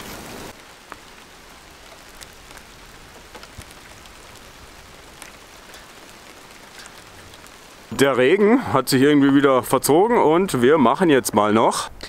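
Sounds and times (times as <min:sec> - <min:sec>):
light rain falling: 0:00.0 - 0:12.0.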